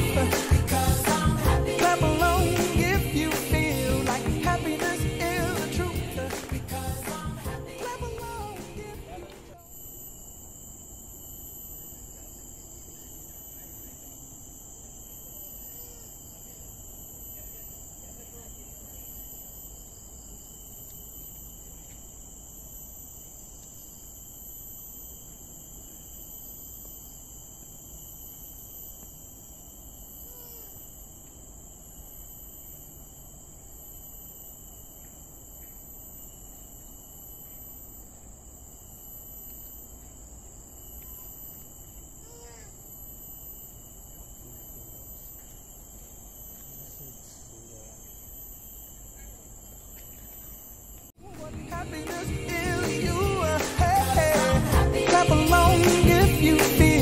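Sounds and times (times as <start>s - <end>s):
forest insects droning: 0.0s - 57.0s
faint bird chirps: 11.6s - 20.4s, 29.8s - 51.1s.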